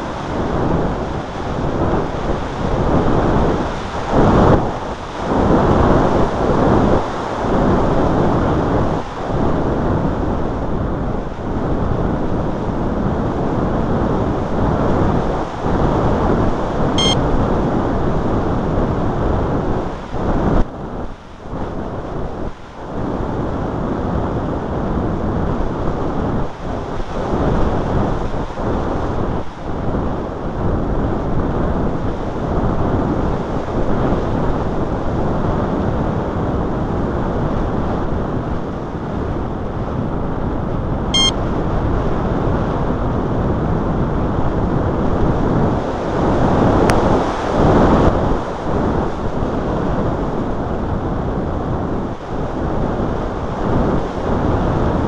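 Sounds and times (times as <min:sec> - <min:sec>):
wind buffeting microphone: 0:00.0 - 0:55.0
short high beep: 0:17.0 - 0:17.2, 0:41.2 - 0:41.4.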